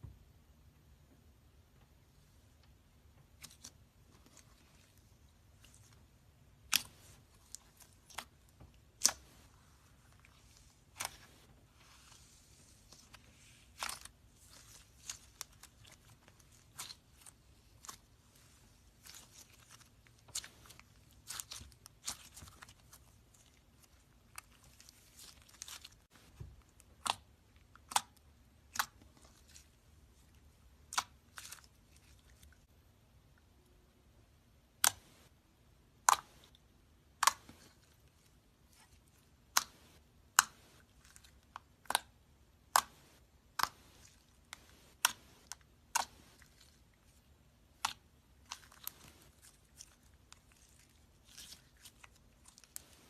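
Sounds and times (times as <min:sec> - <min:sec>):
slime squished by hand: 0:06.6 - 0:32.7.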